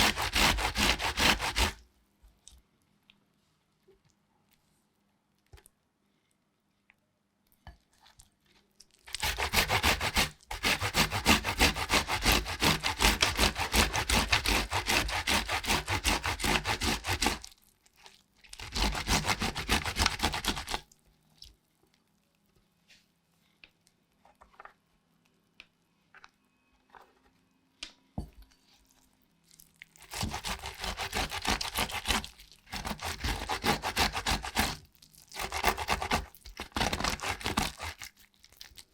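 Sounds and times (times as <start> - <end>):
kitchen tool scraping food: 0.0 - 1.8, 9.1 - 17.4, 18.6 - 20.8, 30.0 - 34.8, 35.4 - 38.1.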